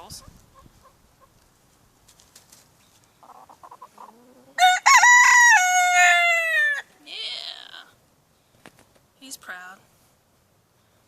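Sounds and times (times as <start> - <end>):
hen clucking: 0.0 - 1.4, 3.2 - 4.8
rooster crowing: 4.6 - 6.9.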